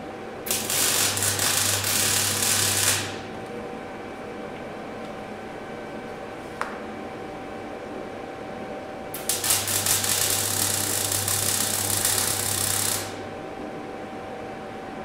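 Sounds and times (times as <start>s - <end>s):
arc welding crackling buzz: 0.4s - 3.4s, 9.1s - 13.4s.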